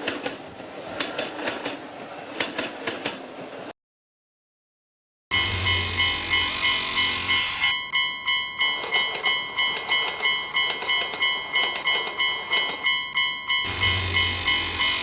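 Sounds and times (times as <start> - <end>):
railroad crossing warning bell: 5.3 - 15.0.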